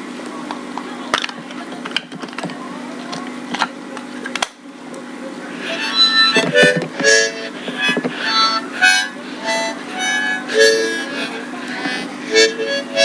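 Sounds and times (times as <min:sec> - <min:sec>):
steady low hum: 0:00.0 - 0:13.0
harmonica bursts of notes: 0:05.6 - 0:13.0.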